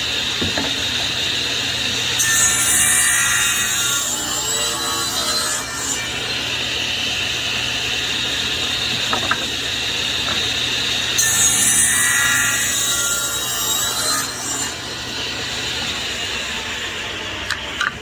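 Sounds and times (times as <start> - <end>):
table saw running: 0.0 - 18.0
light knocks of wood: 8.9 - 9.5.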